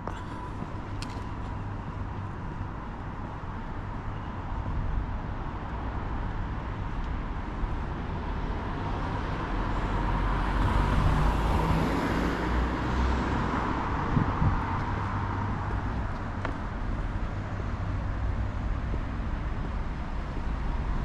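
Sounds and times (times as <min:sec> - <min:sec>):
road traffic: 0:00.0 - 0:21.0
vehicle passing close by: 0:08.0 - 0:15.3.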